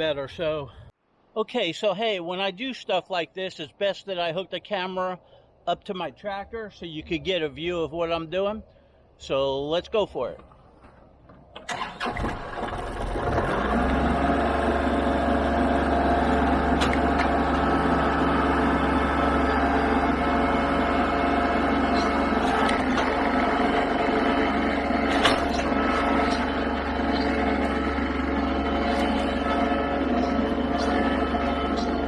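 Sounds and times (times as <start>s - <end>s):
tractor engine running: 11.5s - 32.0s.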